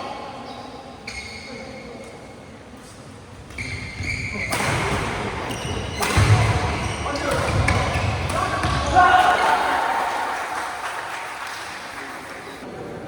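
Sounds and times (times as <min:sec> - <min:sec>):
shoes squeaking on court floor: 0:00.4 - 0:08.9
racket hitting shuttlecock: 0:04.4 - 0:09.4
voices shouting: 0:07.9 - 0:10.5.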